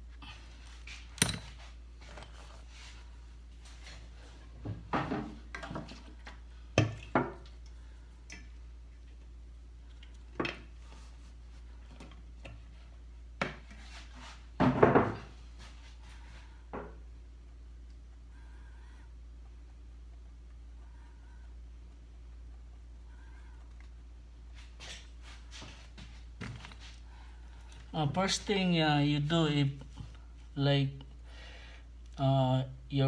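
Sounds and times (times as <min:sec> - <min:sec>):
steady low hum: 0:00.0 - 0:33.0
small tools clattering on bench: 0:01.2 - 0:02.3.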